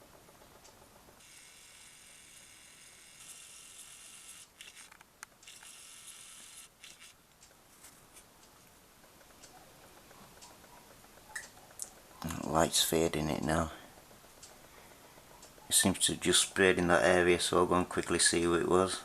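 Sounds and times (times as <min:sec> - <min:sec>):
camera zoom motor whirring: 0:00.3 - 0:07.2.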